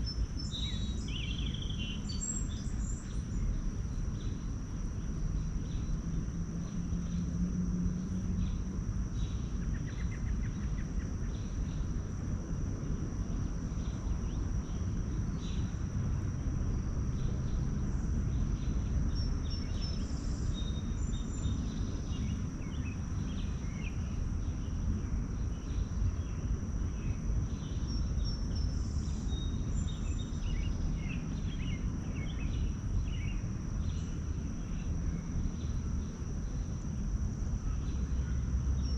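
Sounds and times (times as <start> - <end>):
low steady rumble: 0.0 - 38.9.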